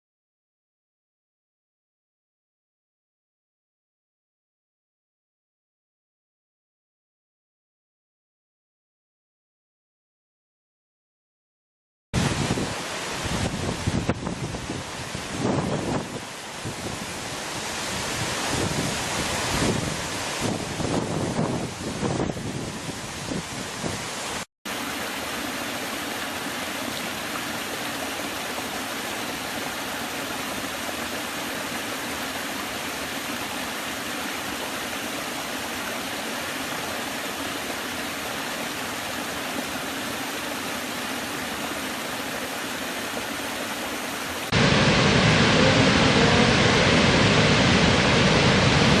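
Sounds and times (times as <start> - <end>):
waterfall rushing: 12.2 - 49.0.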